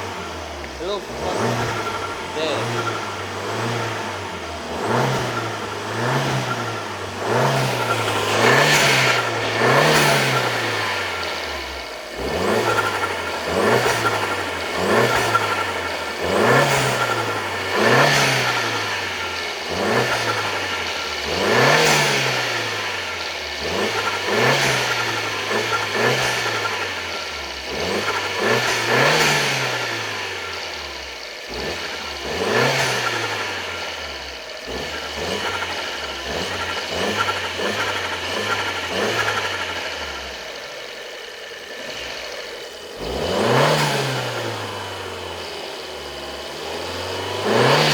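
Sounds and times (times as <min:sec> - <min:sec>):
car engine revving in blips: 0:00.0 - 0:47.9
intake and turbo rush: 0:00.0 - 0:47.9.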